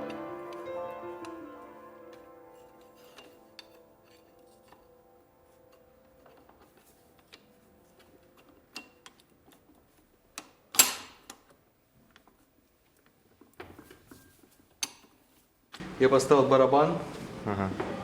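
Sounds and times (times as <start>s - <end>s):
background music: 0.0s - 9.2s
metal parts and tools clicking: 5.7s - 11.5s.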